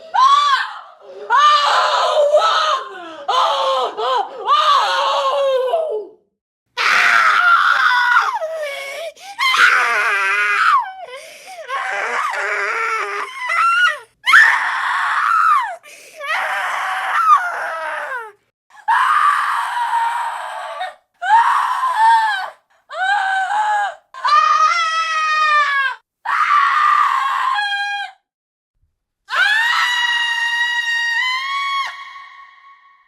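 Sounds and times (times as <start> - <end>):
women screaming: 6.8 - 8.6, 9.3 - 11.0, 11.6 - 22.4, 29.3 - 32.8.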